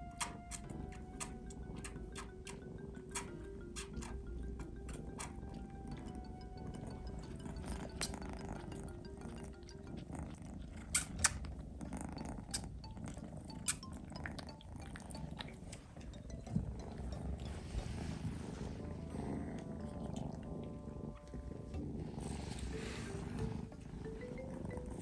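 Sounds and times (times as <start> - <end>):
sharp clicks: 0.0 - 6.3, 11.0 - 11.5
kitten purring: 0.0 - 25.0.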